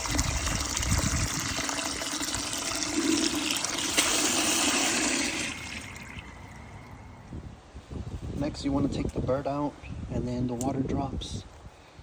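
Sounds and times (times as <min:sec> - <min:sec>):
water running into a pot: 0:00.0 - 0:07.0.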